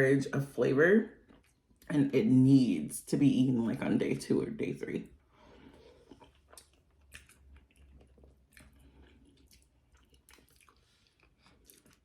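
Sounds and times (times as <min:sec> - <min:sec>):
wet chewing mouth sounds: 0:01.2 - 0:01.9, 0:05.6 - 0:12.0.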